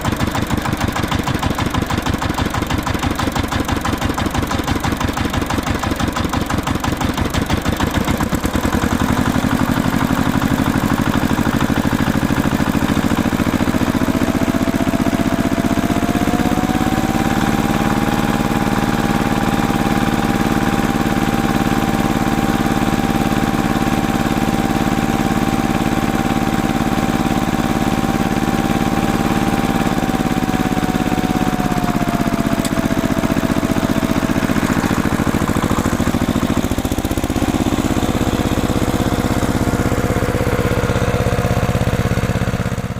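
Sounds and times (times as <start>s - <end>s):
tractor engine chugging: 0.0s - 42.9s.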